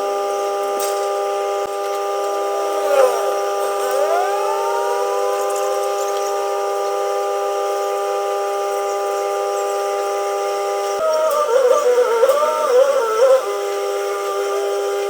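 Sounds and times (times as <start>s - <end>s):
electronic drone: 2.2s - 8.7s
gliding pitch sweeps: 2.5s - 6.5s.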